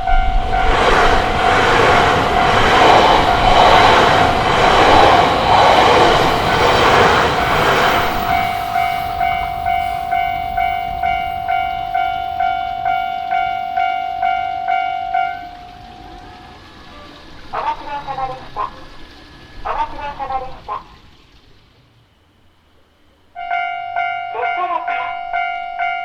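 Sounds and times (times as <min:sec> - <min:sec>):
steady tone: 0:00.0 - 0:18.7
crossing warning bell ringing: 0:00.0 - 0:20.8, 0:23.4 - 0:26.0
train wheels clattering: 0:00.0 - 0:21.9.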